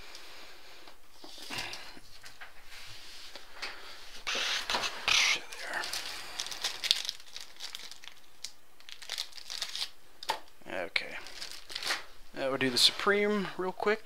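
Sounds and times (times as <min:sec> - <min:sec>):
plastic sleeves crinkling: 0:04.2 - 0:13.2.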